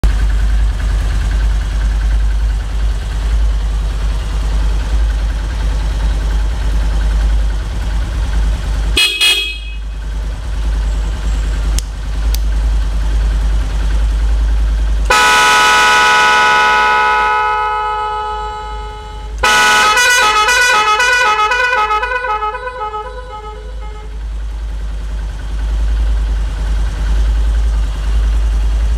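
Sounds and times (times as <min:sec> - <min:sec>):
motorcycle engine idling: 0:00.0 - 0:28.9
motorcycle horn beeps: 0:09.0 - 0:10.1, 0:15.1 - 0:24.2.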